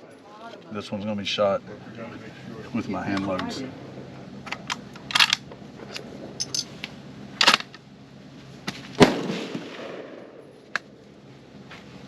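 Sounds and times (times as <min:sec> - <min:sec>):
rifle shot with echo: 0:09.0 - 0:10.5.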